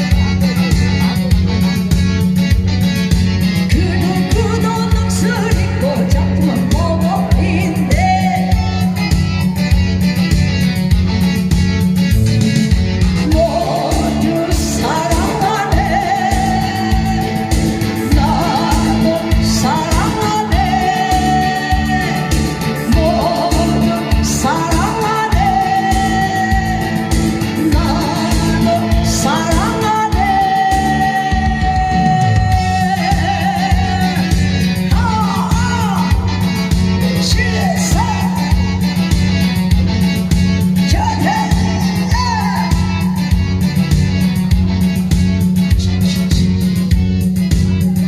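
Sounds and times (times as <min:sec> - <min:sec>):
backing track with steady beat: 0:00.0 - 0:48.0
person singing: 0:13.1 - 0:39.7, 0:40.7 - 0:43.4.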